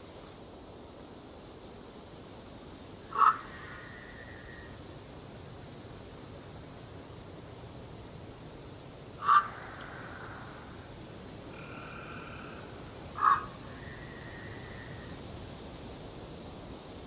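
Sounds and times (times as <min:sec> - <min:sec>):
background hiss: 0:00.0 - 0:17.0
loud animal calls: 0:03.1 - 0:04.8, 0:09.2 - 0:15.2.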